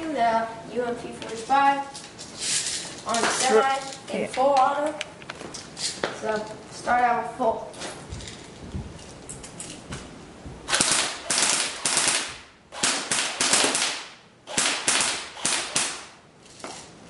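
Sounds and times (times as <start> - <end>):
airsoft gun firing bursts: 10.7 - 16.2.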